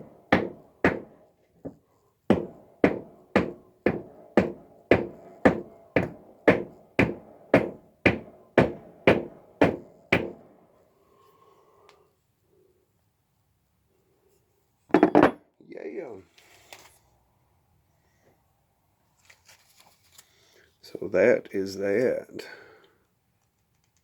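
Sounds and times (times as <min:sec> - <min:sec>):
hammer striking with ring: 0:02.3 - 0:10.5.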